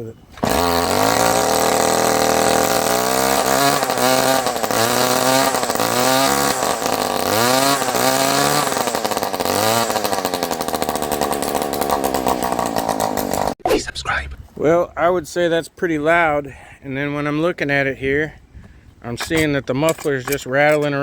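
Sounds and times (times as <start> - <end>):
loose muffler rattling: 0.3 - 13.6, 19.0 - 21.0
string trimmer engine revving: 0.3 - 13.6.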